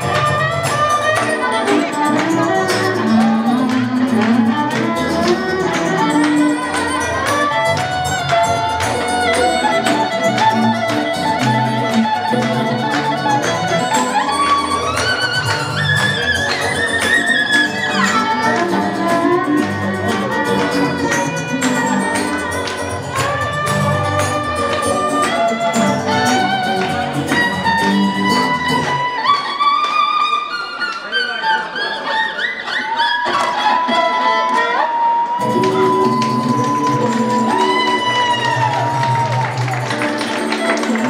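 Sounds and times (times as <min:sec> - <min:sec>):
steady backing beat: 0:00.0 - 0:29.0
violin melody: 0:00.0 - 0:41.0.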